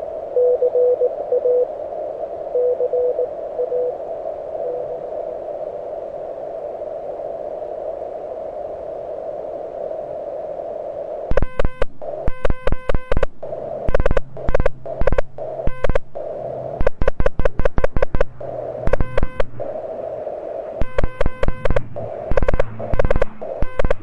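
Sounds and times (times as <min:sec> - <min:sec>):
radio receiver hiss: 0:00.0 - 0:24.0
morse code beeps: 0:00.4 - 0:01.6, 0:02.6 - 0:03.9, 0:11.3 - 0:19.9, 0:20.8 - 0:24.0.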